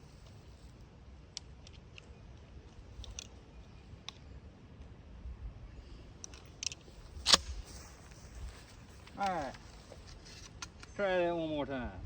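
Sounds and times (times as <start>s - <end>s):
shotgun handling clicks: 1.3s - 3.4s, 6.2s - 7.6s.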